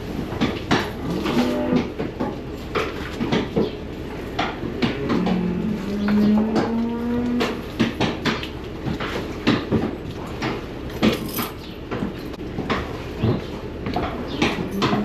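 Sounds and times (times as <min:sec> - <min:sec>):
sharp knocks and clatter: 0:00.1 - 0:15.0
cow mooing: 0:01.0 - 0:02.0, 0:04.8 - 0:07.6.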